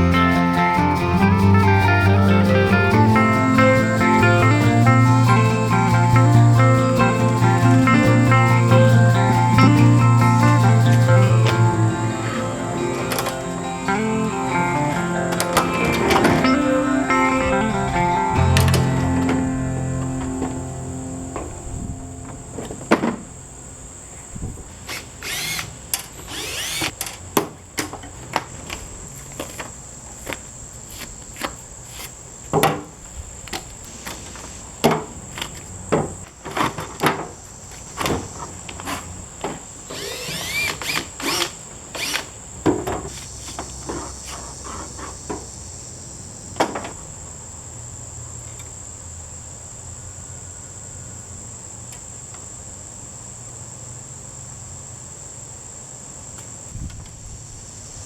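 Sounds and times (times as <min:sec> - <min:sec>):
cricket trill: 0:00.0 - 0:27.1, 0:29.0 - 0:58.0
power drill whirring: 0:24.9 - 0:27.0, 0:39.9 - 0:42.3.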